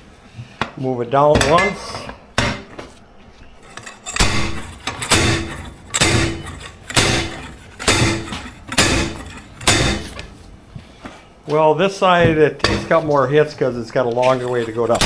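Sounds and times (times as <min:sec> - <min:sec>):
metal-on-metal hits ringing: 0:04.1 - 0:10.4.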